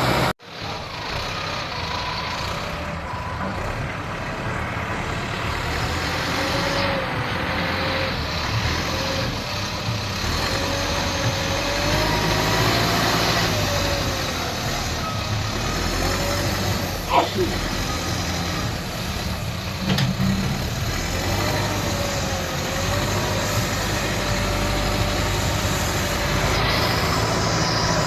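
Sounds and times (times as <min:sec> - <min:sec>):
diesel engine of heavy machinery: 0:00.0 - 0:28.0.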